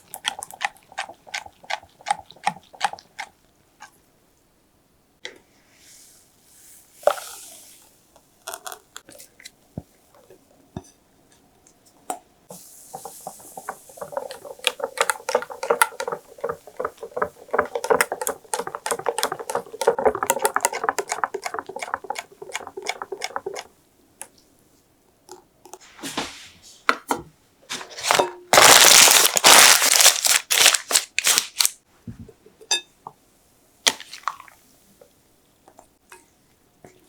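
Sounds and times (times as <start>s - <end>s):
whisk beating mixture in bowl: 0.0s - 3.4s, 12.5s - 23.7s
utensils knocking and clinking: 13.0s - 23.7s.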